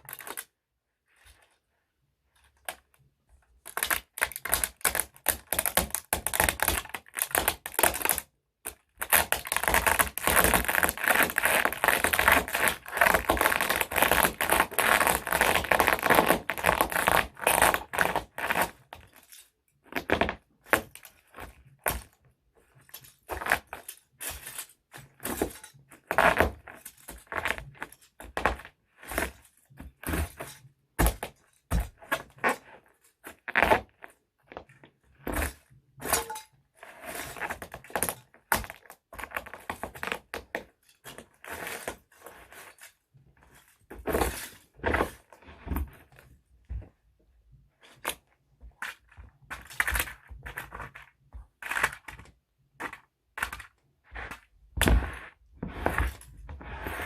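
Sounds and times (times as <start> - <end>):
toy trucks crunching and cracking: 2.6 - 22.2, 48.8 - 57.0.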